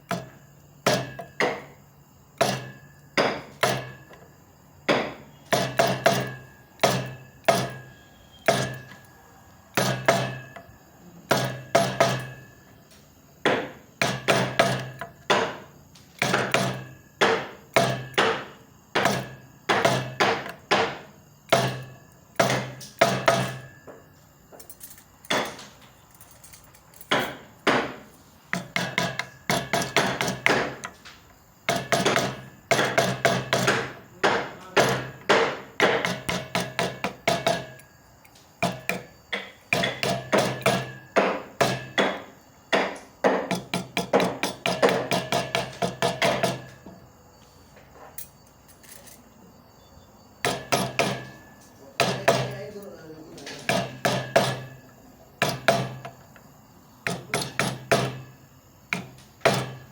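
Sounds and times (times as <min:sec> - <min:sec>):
mallet tapping chisel into wood: 0:00.0 - 0:01.8, 0:02.4 - 0:04.2, 0:04.9 - 0:09.0, 0:09.7 - 0:12.5, 0:13.4 - 0:23.8, 0:27.1 - 0:31.0, 0:31.7 - 0:37.9, 0:38.6 - 0:46.8, 0:50.4 - 0:51.4, 0:52.0 - 0:52.7, 0:53.7 - 0:56.2, 0:57.0 - 0:58.3, 0:58.9 - 0:59.9.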